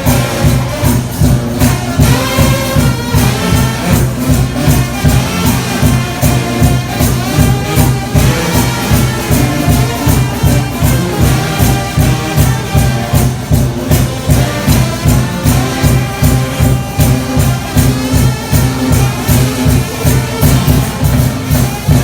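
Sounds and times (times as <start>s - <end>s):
brass band playing: 0.0s - 22.0s.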